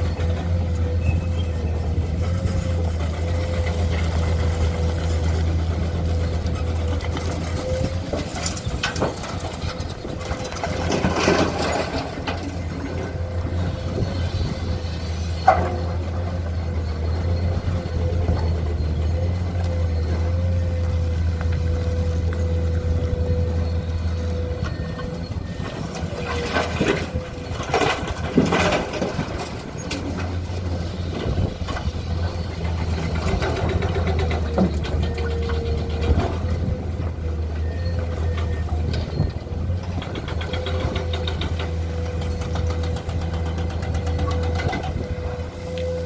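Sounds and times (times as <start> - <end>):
diesel engine running: 0.0 - 46.0
knocks and clattering: 26.2 - 30.4.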